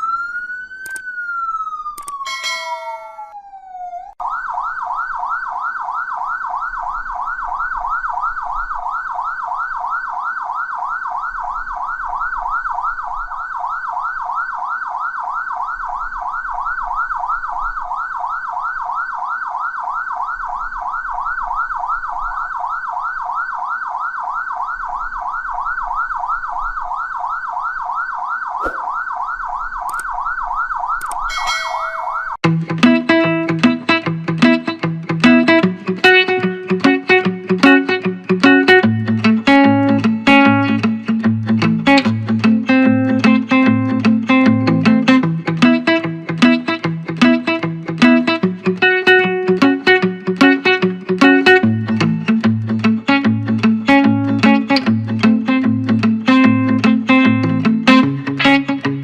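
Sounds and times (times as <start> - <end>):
brief siren beep: 0.0 - 4.1, 28.2 - 32.4
police siren wail and yelp: 0.0 - 32.4, 35.4 - 40.9, 42.4 - 52.0.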